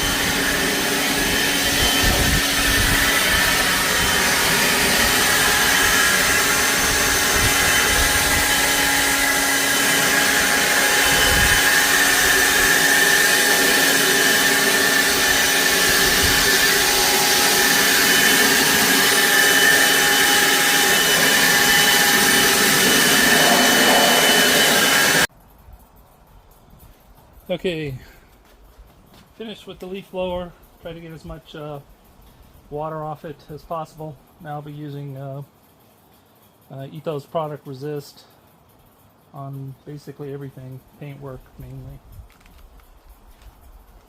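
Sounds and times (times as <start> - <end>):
leaf blower running: 0.0 - 25.3.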